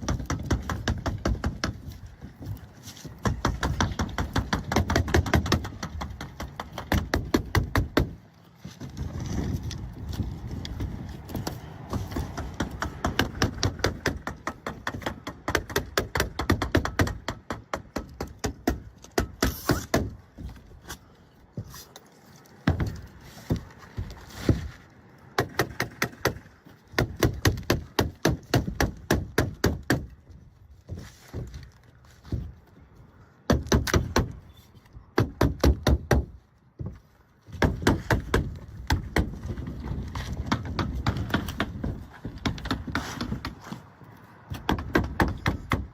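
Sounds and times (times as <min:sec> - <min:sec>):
roofing nailer knocks: 0:03.2 - 0:08.2.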